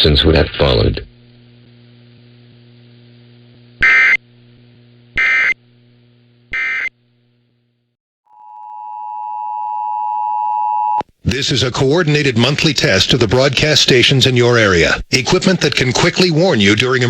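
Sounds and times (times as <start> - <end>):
low electrical hum: 0.0 - 8.0, 11.2 - 17.0
buzzy data bursts: 5.2 - 5.6.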